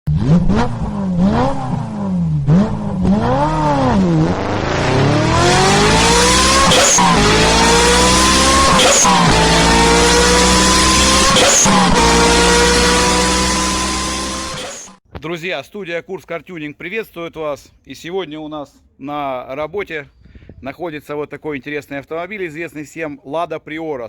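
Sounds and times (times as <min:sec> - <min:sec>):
car engine revving and accelerating: 0:00.1 - 0:15.0.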